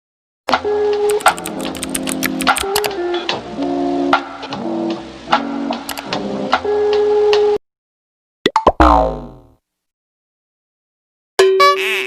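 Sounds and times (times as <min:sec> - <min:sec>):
clicks: 0:01.1 - 0:02.9, 0:05.9 - 0:06.1
cartoon musical sound effect: 0:11.4 - 0:12.0.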